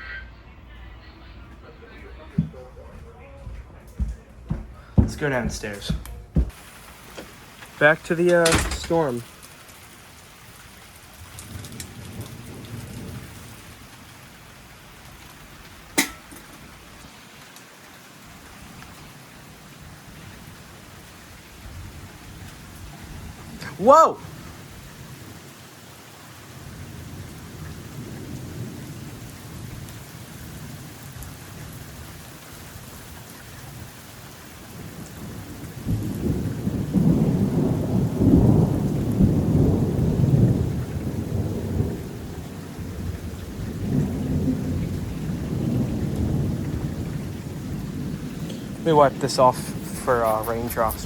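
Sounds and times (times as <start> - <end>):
steady rain: 3.5 - 51.0
low rumble of thunder: 8.4 - 9.4, 10.4 - 17.1, 19.5 - 23.6, 26.2 - 51.0.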